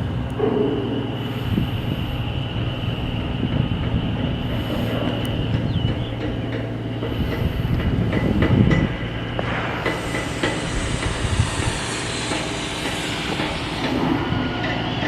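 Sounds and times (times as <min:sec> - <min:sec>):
high whine: 0:00.0 - 0:15.0
machinery low hum: 0:00.0 - 0:15.0.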